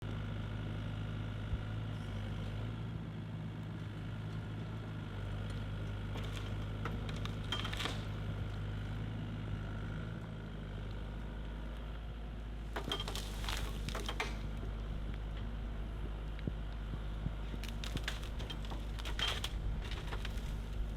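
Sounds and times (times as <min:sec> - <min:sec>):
excavator diesel engine running: 0:00.0 - 0:20.9
wood cracking: 0:05.4 - 0:09.0, 0:12.6 - 0:20.9.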